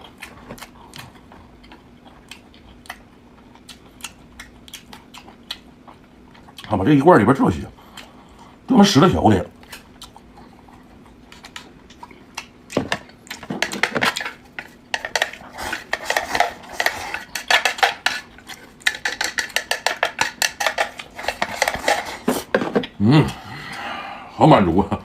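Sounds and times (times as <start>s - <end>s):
utensils clinking against a dish: 13.4s - 22.8s.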